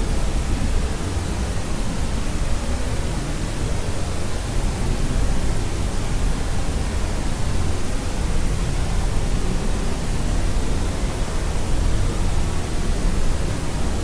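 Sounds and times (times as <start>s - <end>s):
steady white noise: 0.0s - 14.0s.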